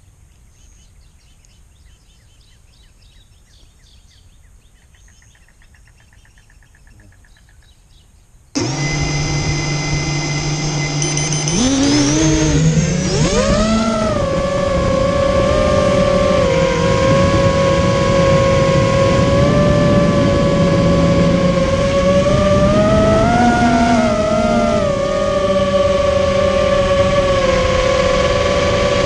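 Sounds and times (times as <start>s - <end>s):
drone motors whining: 8.6s - 29.0s.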